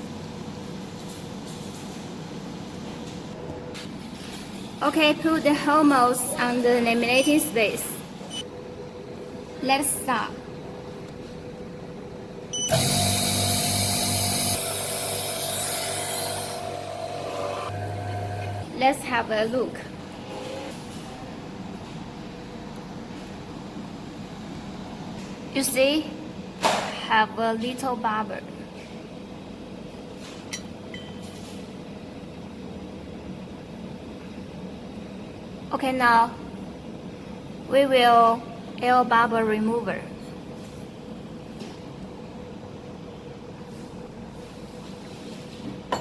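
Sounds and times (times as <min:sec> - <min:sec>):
low mechanical hum: 0:00.0 - 0:46.0
pump motor whine and hum: 0:11.5 - 0:18.8.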